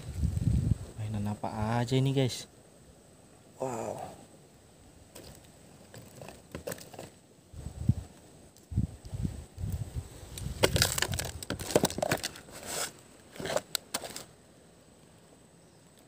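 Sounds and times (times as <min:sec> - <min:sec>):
toys crunching and rustling: 0:05.1 - 0:07.2, 0:10.3 - 0:14.3.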